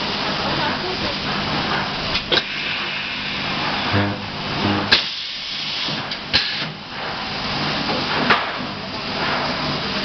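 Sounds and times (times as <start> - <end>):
machinery hiss: 1.1 - 7.8.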